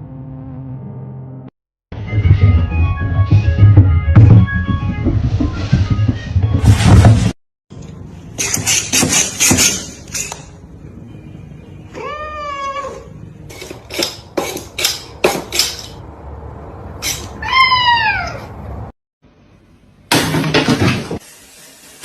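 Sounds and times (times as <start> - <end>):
cat meowing: 11.9 - 13.1, 17.3 - 18.5.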